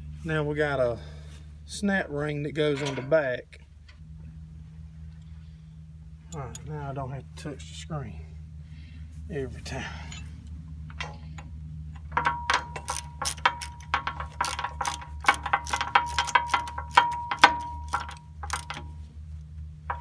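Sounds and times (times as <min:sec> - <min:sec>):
steady low hum: 0:00.0 - 0:20.0
ratchet-like metal clicks: 0:12.0 - 0:19.0.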